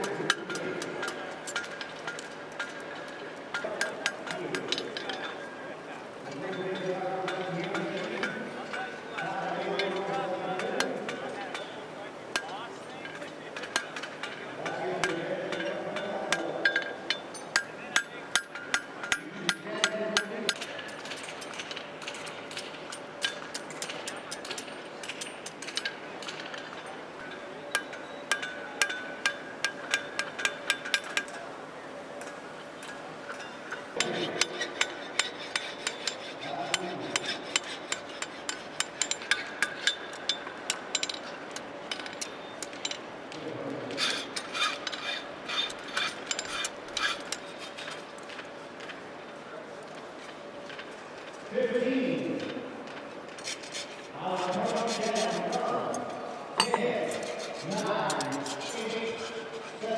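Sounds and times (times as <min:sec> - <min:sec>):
hammer striking steel on anvil: 0:06.5 - 0:08.8, 0:13.1 - 0:21.2, 0:27.2 - 0:31.4, 0:32.2 - 0:41.3, 0:56.6 - 0:57.3.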